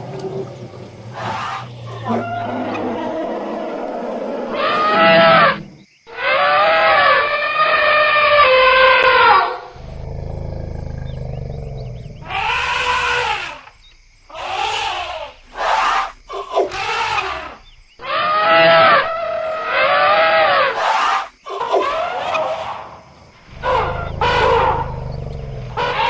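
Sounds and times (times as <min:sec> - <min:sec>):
elephants trumpeting: 0:00.0 - 0:13.7, 0:14.4 - 0:22.8, 0:23.4 - 0:26.0
elephant low rumble: 0:09.7 - 0:13.4, 0:23.4 - 0:26.0.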